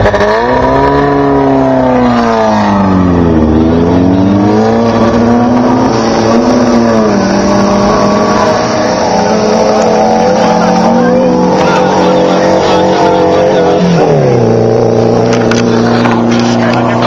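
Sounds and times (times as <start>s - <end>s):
engine revving loudly: 0.0s - 17.0s.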